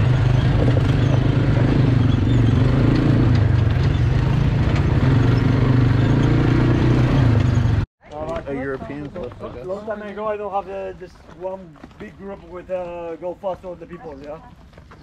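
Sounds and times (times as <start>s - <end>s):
rattles and knocks: 0.0s - 5.4s
quad bike engine droning: 0.0s - 7.8s.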